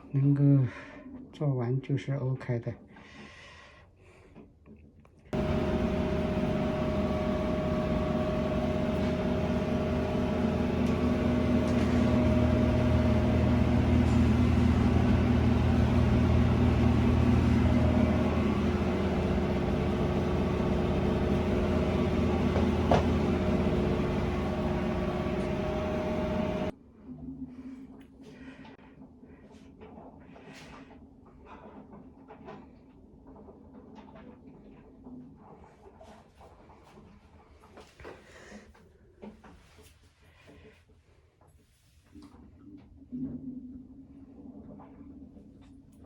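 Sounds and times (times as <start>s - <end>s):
washing machine click: 5.4s - 26.7s
washing machine running: 5.4s - 26.8s.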